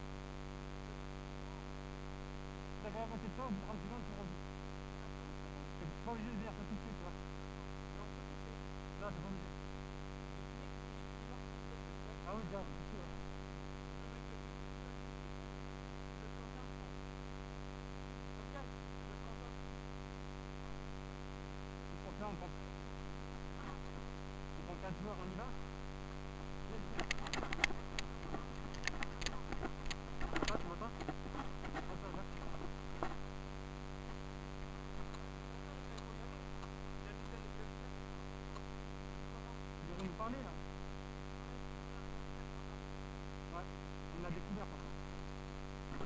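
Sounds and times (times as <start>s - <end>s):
electrical hum: 0.0s - 46.0s
faint clicks and rustles: 26.7s - 33.3s.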